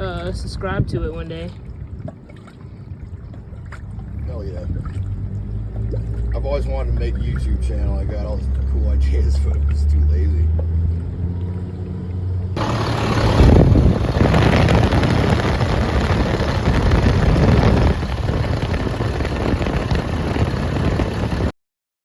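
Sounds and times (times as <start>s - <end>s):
truck engine running: 10.8s - 21.5s.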